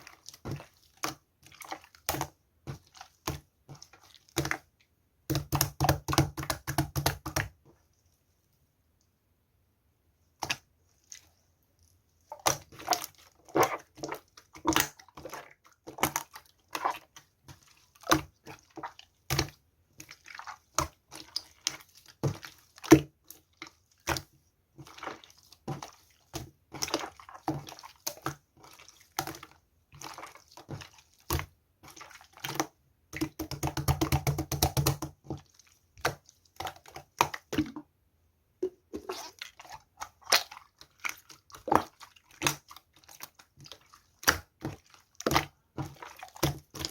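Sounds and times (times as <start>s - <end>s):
slime squished by hand: 12.3s - 17.2s.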